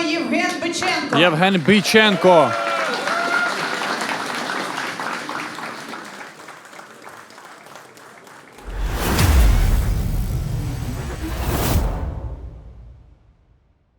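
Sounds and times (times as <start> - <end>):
audience applauding: 0.9 - 8.7
deep rumbling whoosh: 8.6 - 13.7.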